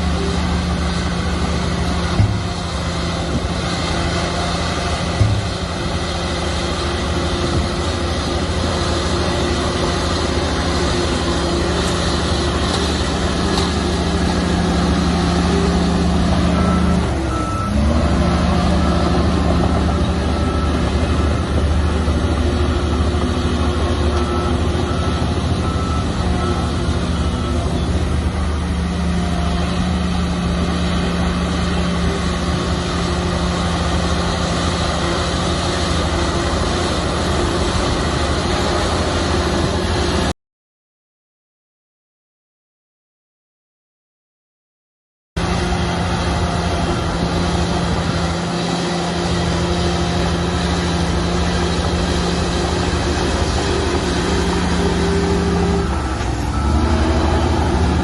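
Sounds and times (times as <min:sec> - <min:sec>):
bulldozer diesel engine running: 0:00.0 - 0:40.3, 0:45.4 - 0:58.0
reversing alarm beeping: 0:10.7 - 0:35.8, 0:46.2 - 0:58.0.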